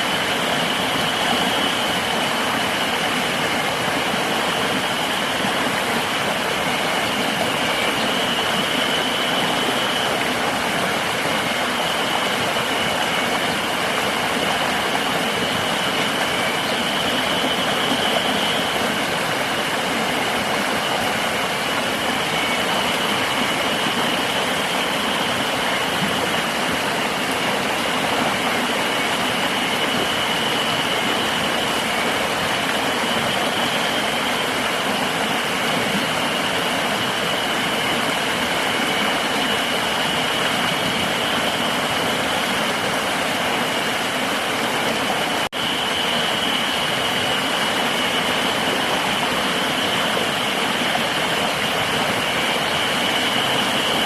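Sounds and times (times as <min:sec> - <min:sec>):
river water rushing: 0:00.0 - 0:54.0.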